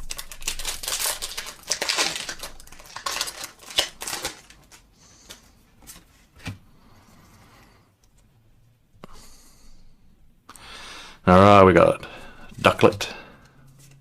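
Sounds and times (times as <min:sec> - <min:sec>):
foil wrapper crinkling: 0:00.0 - 0:04.9.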